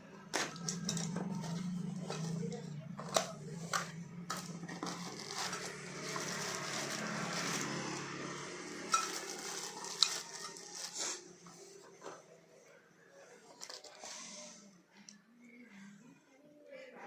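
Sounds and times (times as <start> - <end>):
packaging rustling: 0.4 - 11.3.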